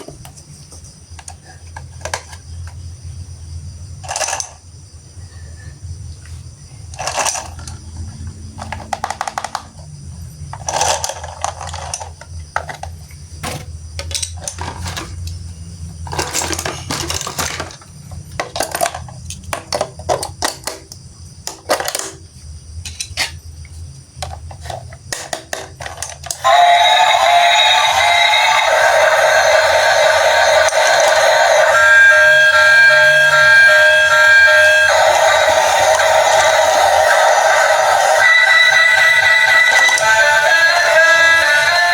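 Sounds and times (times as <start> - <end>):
plastic toy parts clicking: 6.9 - 7.8, 8.6 - 9.9, 10.6 - 15.4, 24.2 - 26.4
music: 26.4 - 41.9.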